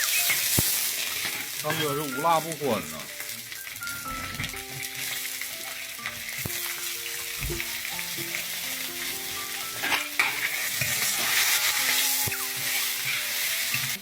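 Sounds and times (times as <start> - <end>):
food sizzling in a pot: 0.0 - 14.0
faint simple tune: 3.1 - 14.0
spatula knocking on pot: 7.4 - 8.4.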